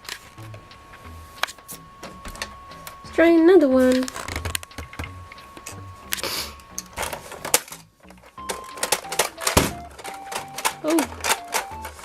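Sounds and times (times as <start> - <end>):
plastic toy machine clicks: 6.8 - 12.0
coin going in: 8.4 - 12.0.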